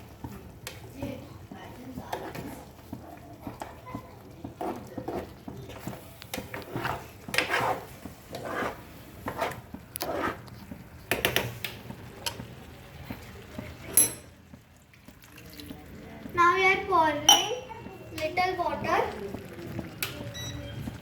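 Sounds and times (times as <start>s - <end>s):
spoon scraping a cooking pan: 2.0s - 11.6s.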